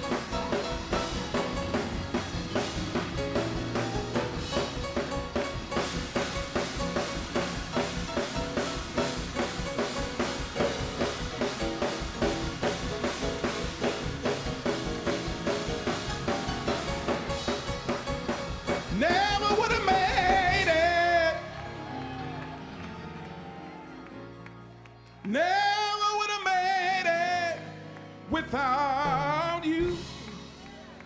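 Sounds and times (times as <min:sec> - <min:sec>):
drum kit fast beat: 0:00.0 - 0:21.2
gospel band playing: 0:00.0 - 0:31.0.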